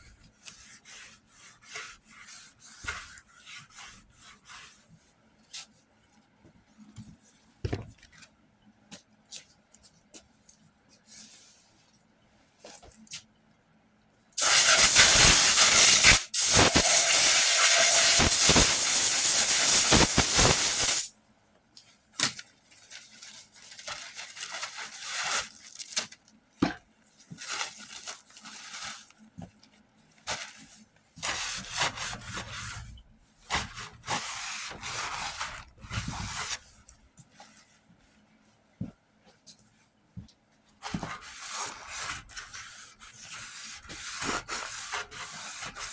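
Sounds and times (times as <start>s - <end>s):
air blow gun hissing: 14.4s - 21.1s.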